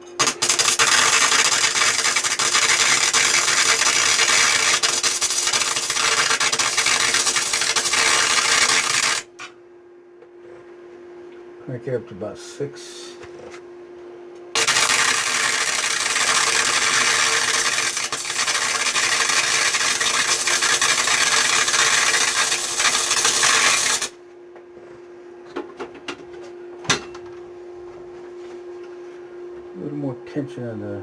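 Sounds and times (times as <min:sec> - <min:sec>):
welding arc crackle: 0:00.0 - 0:09.4, 0:14.6 - 0:24.2
steady hum: 0:00.0 - 0:31.0.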